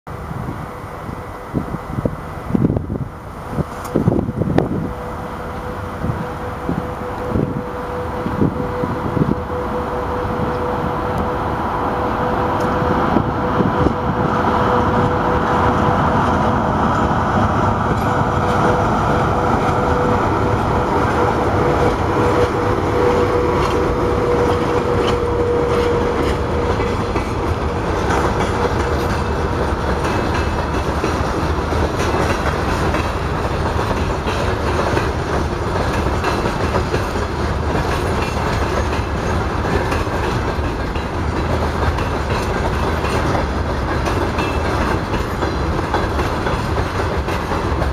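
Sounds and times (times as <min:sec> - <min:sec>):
train wheels clattering over rail joints: 0:14.9 - 0:47.9.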